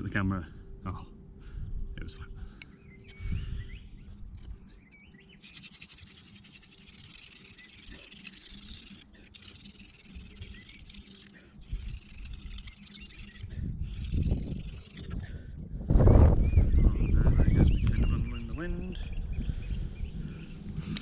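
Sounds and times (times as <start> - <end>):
wooden spindle rasping on board: 5.4 - 15.3.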